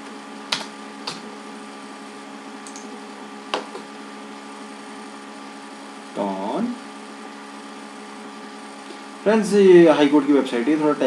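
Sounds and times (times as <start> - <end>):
electrical mains hum: 0.0 - 11.0
keyboard clicks: 0.5 - 1.2, 2.6 - 2.9.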